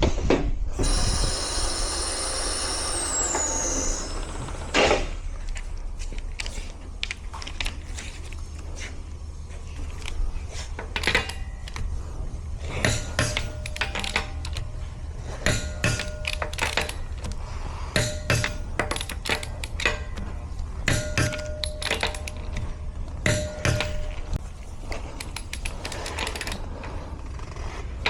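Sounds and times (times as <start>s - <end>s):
brakes squealing: 0.8s - 6.9s
clicks and rattles: 9.7s - 27.1s.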